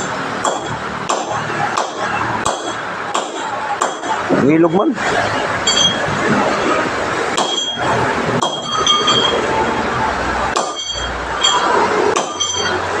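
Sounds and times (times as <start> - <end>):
metal ringing clinks: 5.6 - 6.1, 7.4 - 9.5, 10.6 - 12.9.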